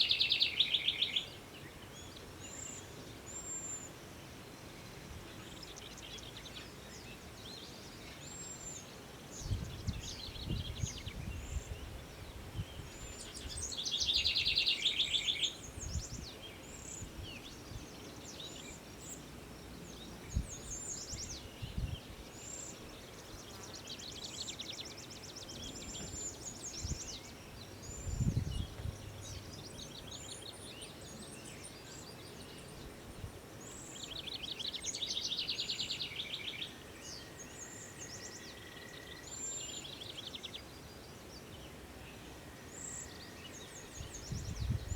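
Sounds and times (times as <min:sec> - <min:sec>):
songbirds chirping and singing: 0:00.0 - 0:44.9
wind rumble on microphone: 0:09.4 - 0:14.6, 0:15.7 - 0:18.0, 0:20.2 - 0:22.3, 0:25.6 - 0:30.1, 0:43.9 - 0:44.9.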